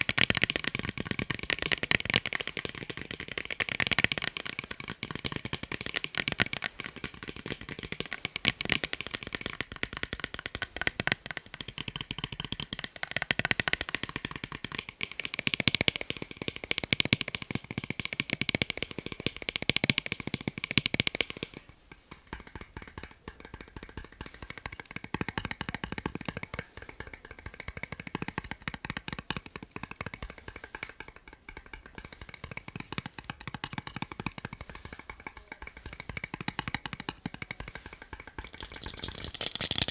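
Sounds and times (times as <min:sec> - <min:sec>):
tapping on eyeglasses: 0:00.0 - 0:39.9.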